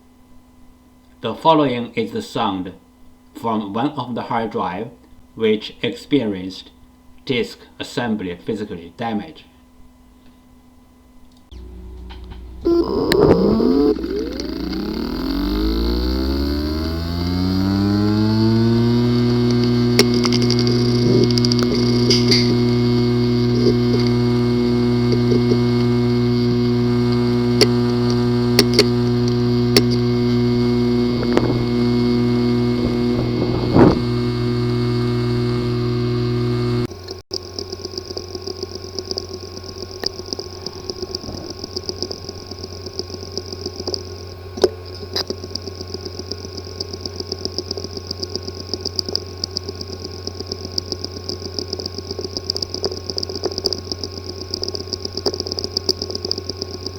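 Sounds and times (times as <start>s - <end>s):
hard drive sharp clicks: 11.3s - 56.9s
hard drive buzzing: 11.4s - 56.9s
fast even ticking: 12.6s - 33.4s, 35.8s - 56.9s.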